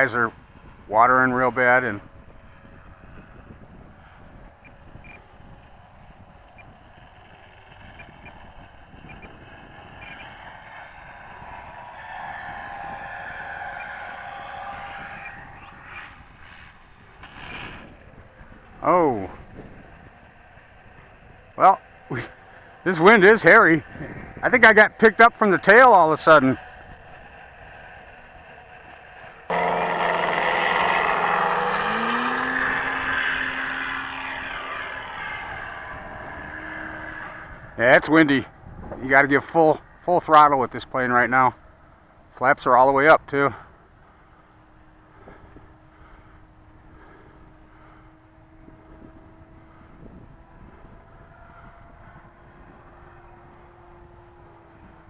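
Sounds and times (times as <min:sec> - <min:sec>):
wind rumble on microphone: 0:00.0 - 0:25.2, 0:34.8 - 0:40.0, 0:44.6 - 0:55.0
model airplane engine droning: 0:00.0 - 0:42.4, 0:43.2 - 0:55.0.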